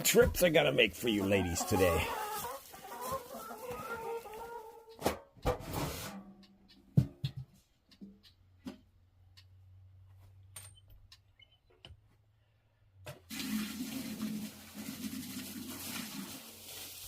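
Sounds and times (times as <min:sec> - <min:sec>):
chickens clucking: 0:00.1 - 0:05.6.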